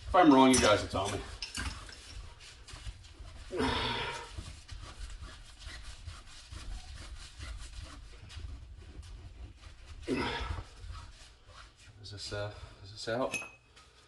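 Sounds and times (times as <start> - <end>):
metal rasping of unscrewing thread: 0.0 - 2.6.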